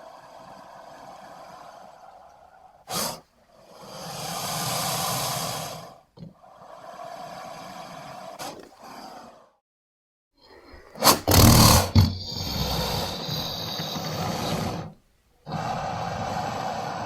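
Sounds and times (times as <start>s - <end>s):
creature hissing breath: 0.0s - 9.6s, 10.9s - 17.0s
creature snorts: 11.0s - 17.0s.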